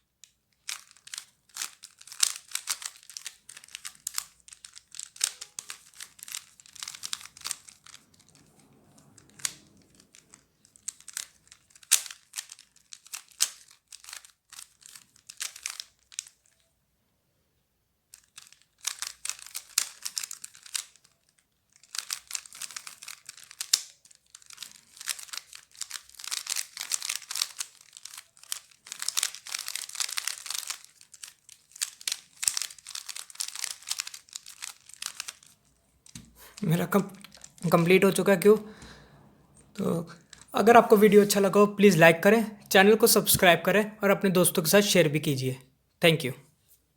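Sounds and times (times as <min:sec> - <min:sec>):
puzzle cube clicking: 0:00.6 - 0:16.6, 0:18.2 - 0:38.9.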